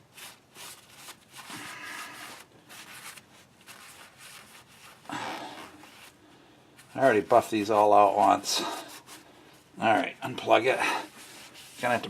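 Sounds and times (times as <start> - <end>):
rag rubbing on metal: 10.4 - 12.0.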